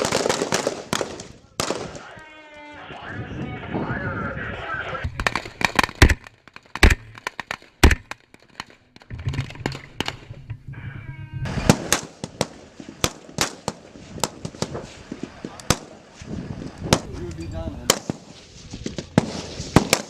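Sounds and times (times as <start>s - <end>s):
rifle shots: 0.0s - 2.1s, 5.2s - 8.9s, 11.5s - 16.1s, 17.9s - 18.4s, 19.1s - 20.0s.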